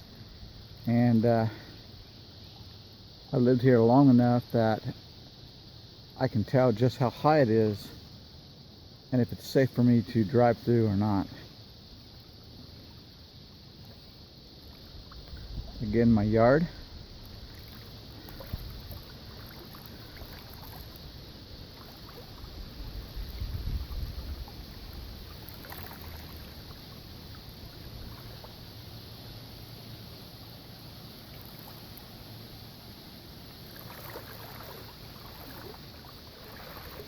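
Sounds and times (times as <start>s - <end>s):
wind rumble on microphone: 15.0s - 21.0s, 21.9s - 26.9s.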